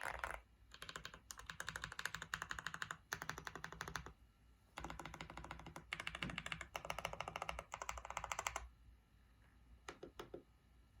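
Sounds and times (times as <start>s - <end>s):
mechanical keyboard typing: 0.0s - 4.1s, 4.8s - 8.7s.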